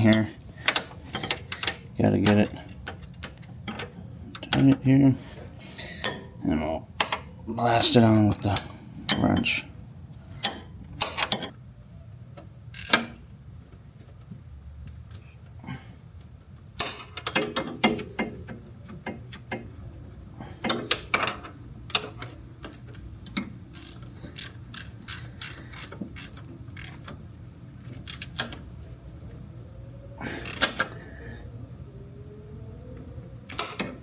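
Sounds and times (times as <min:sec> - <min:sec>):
ratchet wrench clicking: 0:23.7 - 0:27.1.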